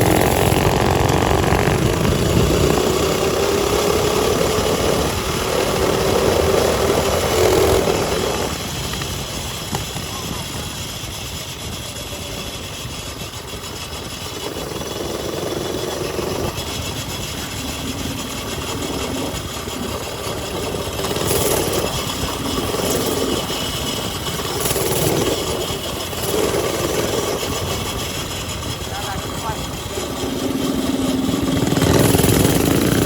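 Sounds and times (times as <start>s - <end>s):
mini bike engines running: 0.0s - 33.0s.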